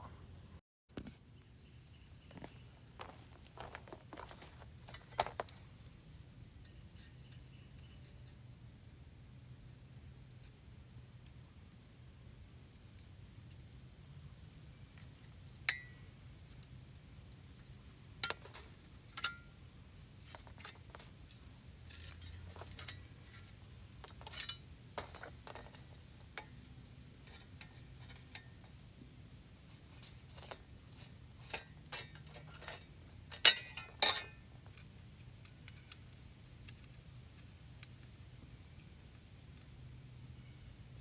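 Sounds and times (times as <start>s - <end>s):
metal tools clinking: 2.4s - 5.6s, 21.8s - 26.3s, 30.0s - 34.4s.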